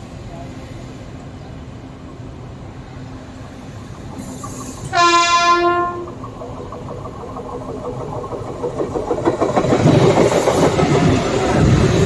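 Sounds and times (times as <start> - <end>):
train rumbling on track: 0.0 - 12.0
locomotive horn: 4.9 - 6.1.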